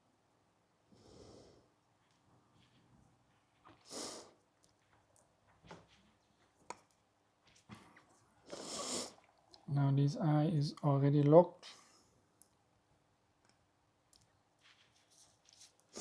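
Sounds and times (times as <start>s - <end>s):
short rustle: 14.6s - 16.0s.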